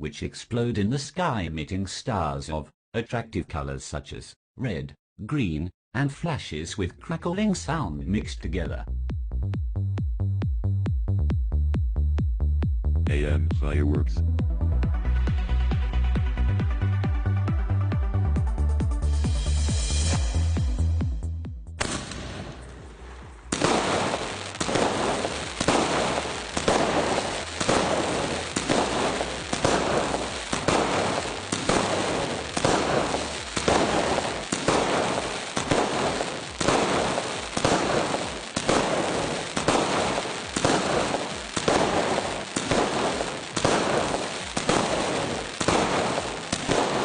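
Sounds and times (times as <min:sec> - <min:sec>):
crackling firework bursts: 0:21.8 - 0:47.0
fireworks shells firing: 0:21.8 - 0:47.0.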